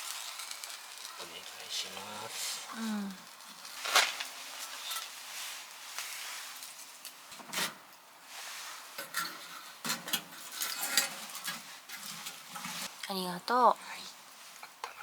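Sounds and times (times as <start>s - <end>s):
rustling of small objects: 0.0s - 7.5s.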